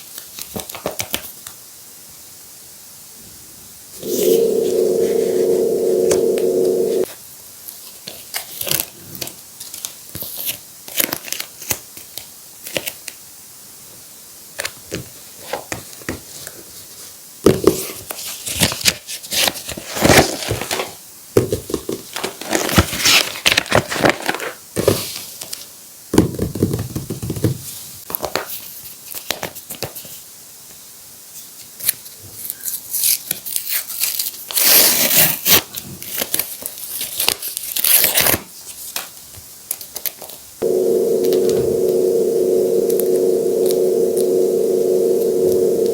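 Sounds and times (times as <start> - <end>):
loud steady hum: 4.0 - 7.1, 40.6 - 45.9.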